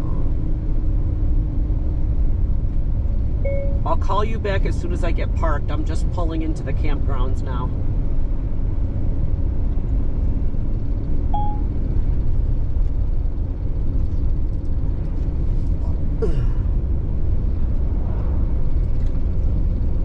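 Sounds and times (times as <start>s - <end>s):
vehicle engine and tyre rumble: 0.0s - 20.0s
short beep: 3.4s - 3.9s, 11.4s - 11.7s.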